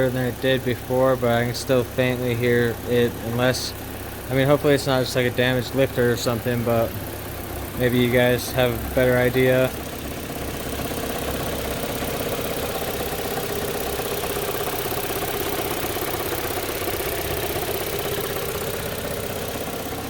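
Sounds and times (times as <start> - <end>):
car engine idling: 0.0 - 20.0
faint engine tapping: 0.0 - 20.0.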